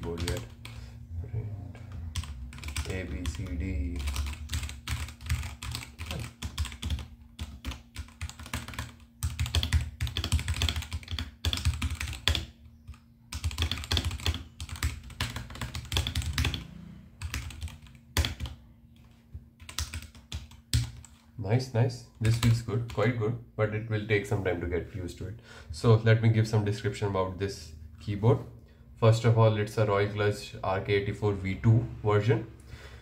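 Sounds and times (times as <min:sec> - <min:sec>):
mechanical keyboard typing: 0:00.0 - 0:00.8, 0:01.9 - 0:18.6, 0:19.6 - 0:21.2.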